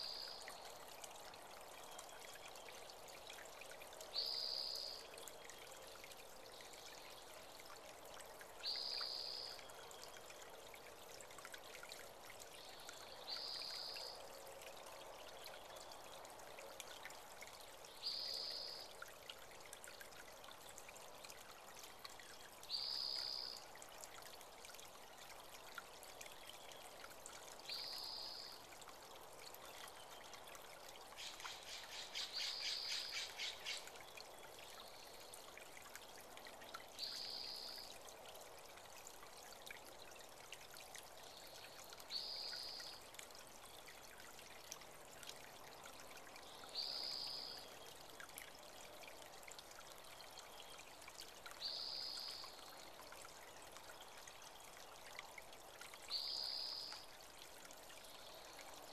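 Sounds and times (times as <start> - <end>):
creek trickling: 0.0 - 58.9.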